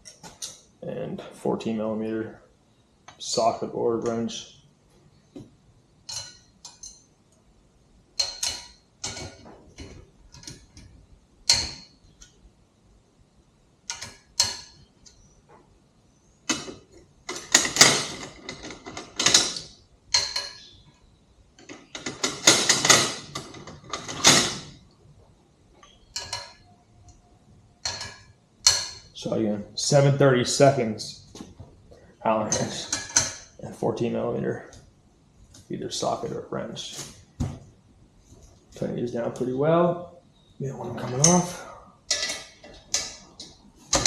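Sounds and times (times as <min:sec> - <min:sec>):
metal tools clinking and rattling: 0:06.0 - 0:07.1, 0:08.2 - 0:12.3, 0:16.5 - 0:20.8, 0:21.6 - 0:24.8, 0:25.8 - 0:27.2, 0:27.8 - 0:29.3, 0:32.4 - 0:33.6, 0:40.9 - 0:44.0.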